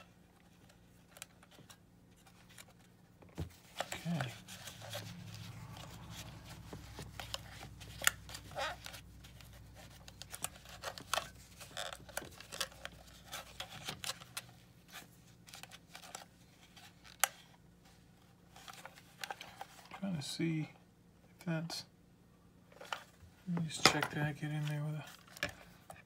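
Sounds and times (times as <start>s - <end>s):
tools clicking and scraping plastic: 3.6s - 14.6s.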